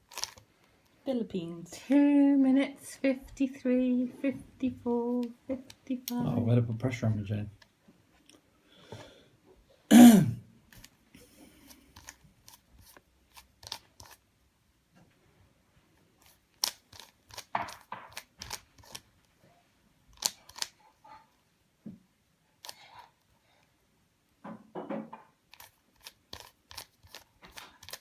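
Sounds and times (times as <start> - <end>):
plastic cube clicks: 0.1 - 0.4, 16.6 - 19.1, 20.2 - 20.8, 25.6 - 28.0
short vocal sound falling in pitch: 9.9 - 10.4.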